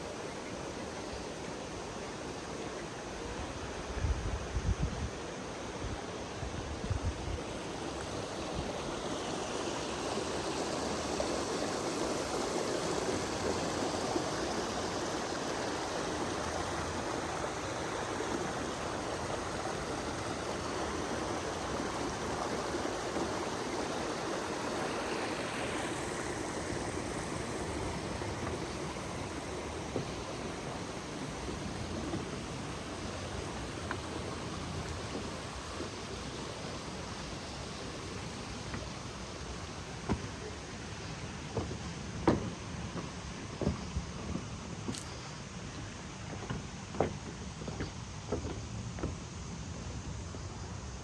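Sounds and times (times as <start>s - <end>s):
waterfall rushing: 7.5s - 41.5s.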